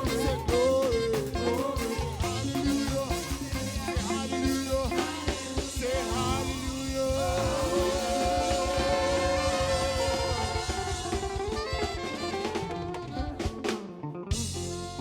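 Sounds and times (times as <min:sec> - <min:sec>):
drum-kit fills and hits: 0:00.0 - 0:15.0
gospel band playing: 0:00.0 - 0:15.0.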